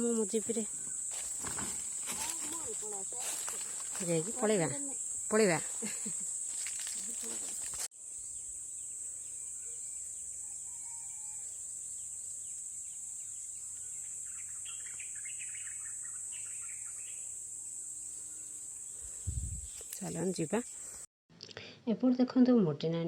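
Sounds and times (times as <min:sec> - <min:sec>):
high-pitched insect drone: 0:00.0 - 0:21.1
birds chirping: 0:13.2 - 0:21.0.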